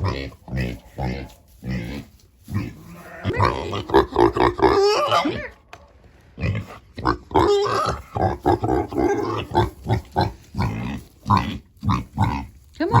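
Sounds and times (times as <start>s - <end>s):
sheep bleating: 2.6s - 5.6s.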